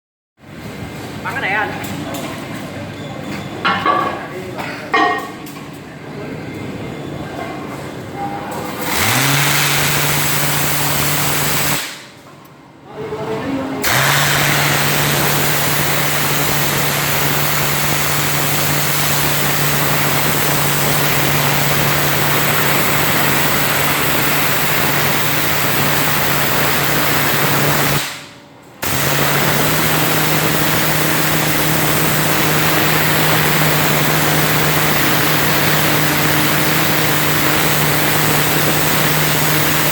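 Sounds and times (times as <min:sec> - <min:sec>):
pressure washer jet hissing: 0:08.8 - 0:12.0, 0:13.8 - 0:28.2, 0:28.8 - 0:39.9
pressure washer motor hum: 0:08.8 - 0:12.0, 0:13.8 - 0:28.2, 0:28.8 - 0:39.9.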